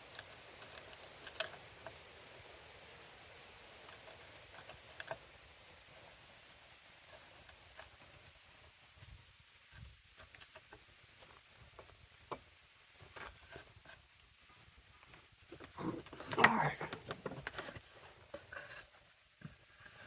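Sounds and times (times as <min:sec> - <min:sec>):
faint ticks and taps: 0:07.0 - 0:18.8.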